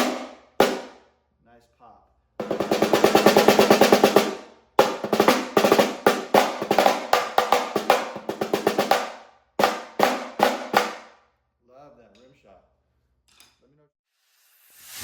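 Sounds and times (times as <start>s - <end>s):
snare darbuka drum hits: 0.0s - 1.0s, 2.4s - 11.2s.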